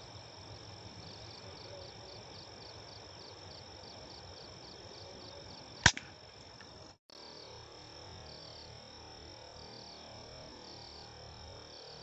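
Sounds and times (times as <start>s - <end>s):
crickets chirping: 0.0s - 12.0s
air rifle shot: 5.8s - 6.2s.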